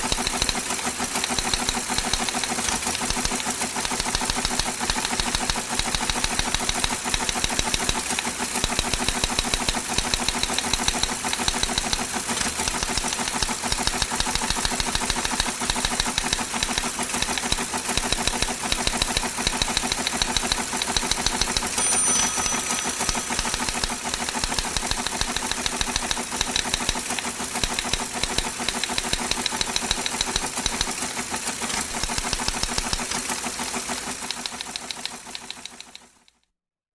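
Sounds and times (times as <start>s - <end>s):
high ping: 21.8s - 25.0s.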